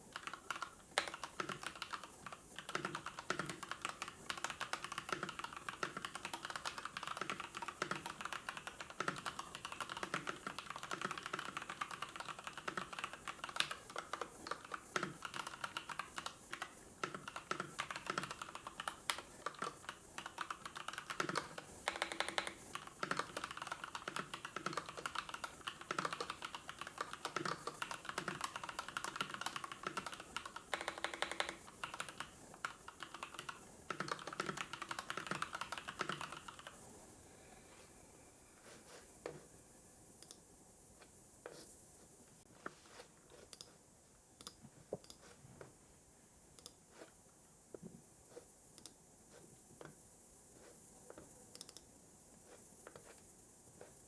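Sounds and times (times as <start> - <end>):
typing on computer keyboard: 0.0 - 36.8.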